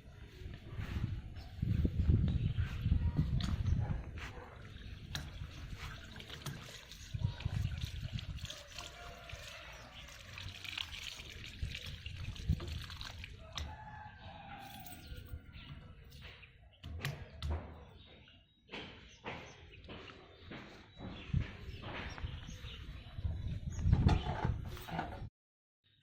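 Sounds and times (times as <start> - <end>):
water trickling over hands: 4.8 - 13.6.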